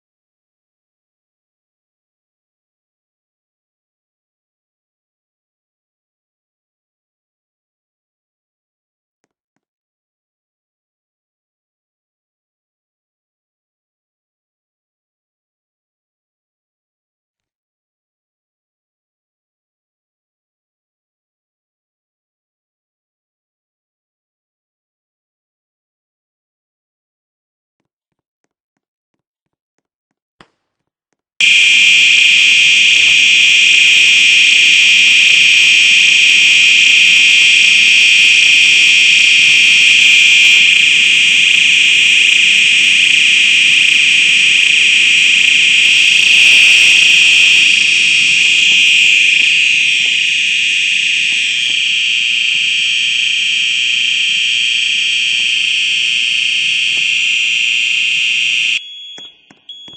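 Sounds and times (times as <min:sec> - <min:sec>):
fire alarm high-pitched tone: 0:31.4 - 0:59.9.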